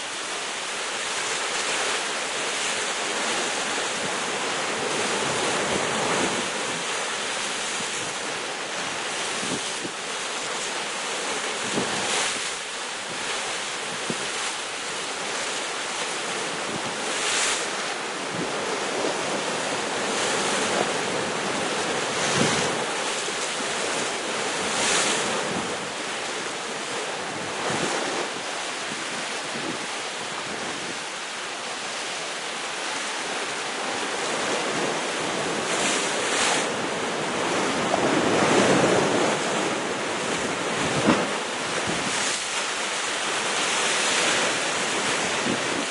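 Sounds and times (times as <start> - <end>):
waves breaking on rocks: 0.0 - 45.9
wind on microphone: 4.0 - 10.2, 11.6 - 14.5, 18.2 - 31.3, 33.8 - 42.6, 43.4 - 45.9.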